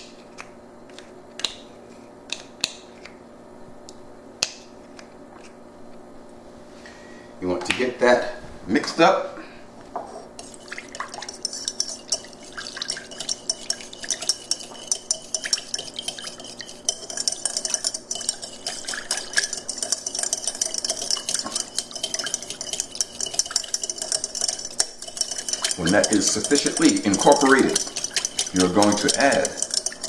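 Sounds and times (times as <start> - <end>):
utensil whisking in a bowl: 10.4 - 30.0.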